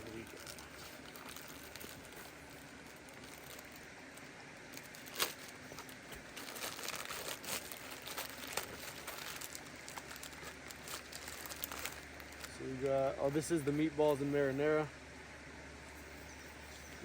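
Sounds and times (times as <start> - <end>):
plastic pouches crinkling: 0.0 - 12.6
sharp plastic crackle: 0.0 - 12.6.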